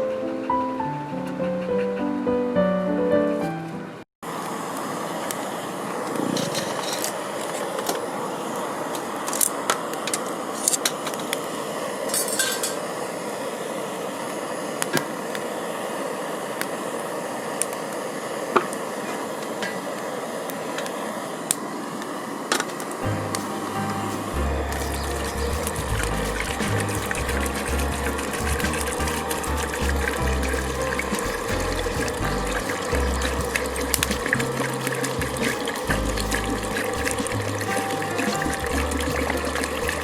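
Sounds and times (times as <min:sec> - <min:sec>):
utensils and dishes clinking: 0:06.3 - 0:07.2, 0:12.1 - 0:12.9, 0:23.1 - 0:40.0
background music: 0:23.0 - 0:40.0
steady rushing background: 0:23.0 - 0:40.0.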